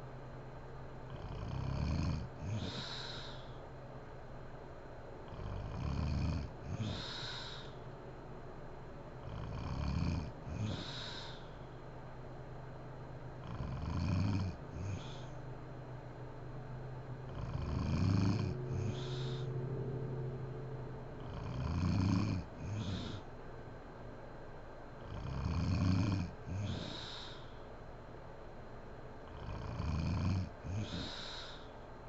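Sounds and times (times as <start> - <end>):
woman snoring loudly: 1.1 - 3.3, 5.3 - 7.6, 9.2 - 11.4, 13.4 - 15.3, 17.3 - 19.5, 21.2 - 23.2, 25.1 - 27.3, 29.3 - 31.6.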